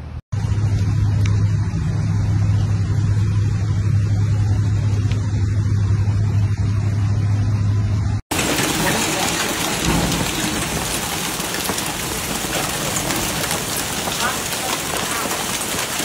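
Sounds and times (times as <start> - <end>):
steady low hum: 0.0 - 8.2
heavy rain pouring: 8.3 - 16.0.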